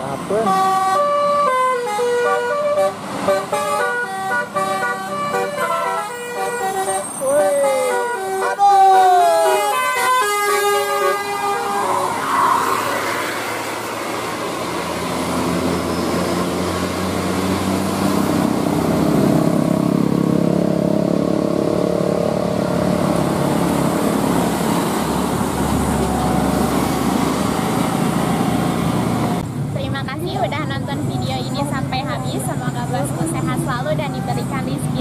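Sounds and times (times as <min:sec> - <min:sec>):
multi-tone bus horn melody: 0:00.0 - 0:12.3
bus diesel engine: 0:00.0 - 0:35.0
road noise: 0:00.0 - 0:35.0.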